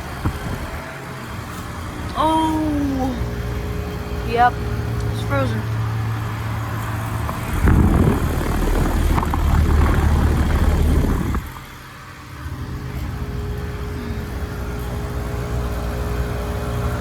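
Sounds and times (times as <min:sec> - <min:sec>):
heat pump humming: 0:00.0 - 0:17.0
loud rushing noise: 0:05.6 - 0:16.2.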